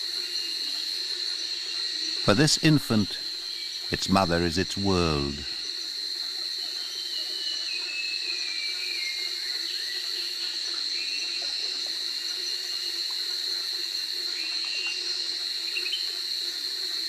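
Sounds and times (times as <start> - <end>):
cricket chorus: 0.0 - 17.0.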